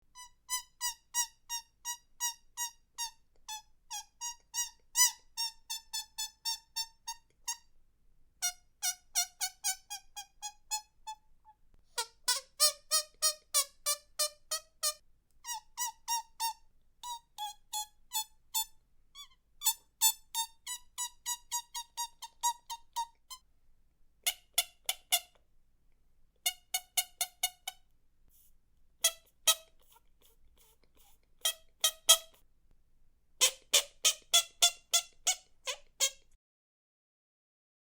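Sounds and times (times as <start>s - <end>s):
squeaky animal chirps: 29.0s - 32.4s, 33.4s - 36.3s.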